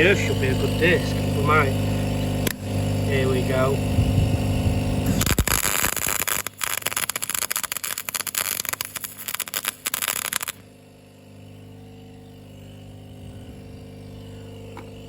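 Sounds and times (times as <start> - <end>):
welder arc crackling: 4.5 - 10.6.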